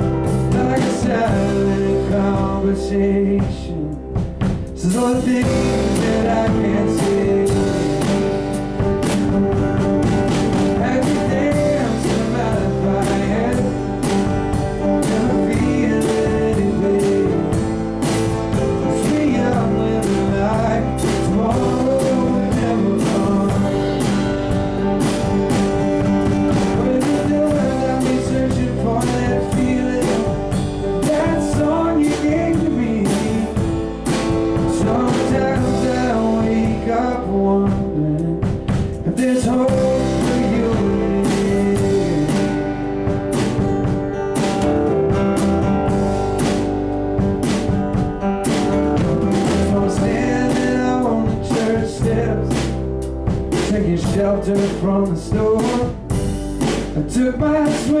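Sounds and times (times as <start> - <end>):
gliding lead melody: 0.0 - 53.5
live band playing country-rock: 0.0 - 58.0.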